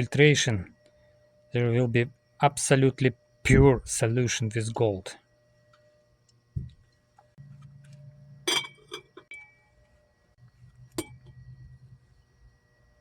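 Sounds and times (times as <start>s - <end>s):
glassware clinking: 8.5s - 9.6s, 11.0s - 11.3s.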